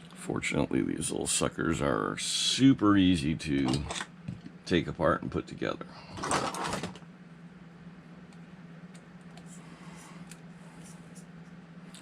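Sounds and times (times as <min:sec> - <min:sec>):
steady low hum: 0:00.0 - 0:12.0
small parts clattering: 0:06.2 - 0:07.0.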